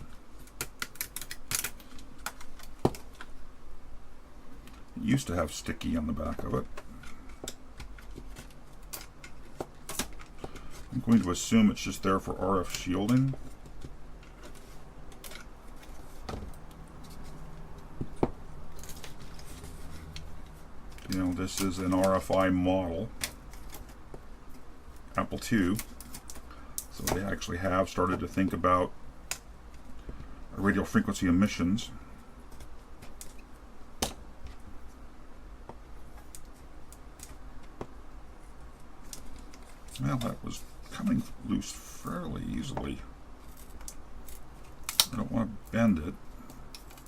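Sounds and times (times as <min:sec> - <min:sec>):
small parts clicking: 0:00.0 - 0:03.3, 0:46.4 - 0:47.0
steady low hum: 0:00.0 - 0:47.0.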